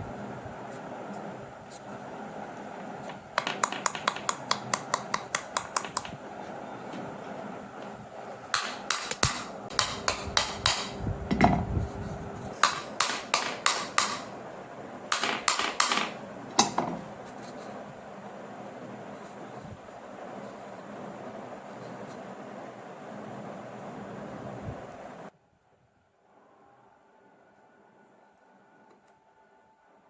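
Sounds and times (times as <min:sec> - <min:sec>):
rapid light tapping: 0:03.0 - 0:06.2.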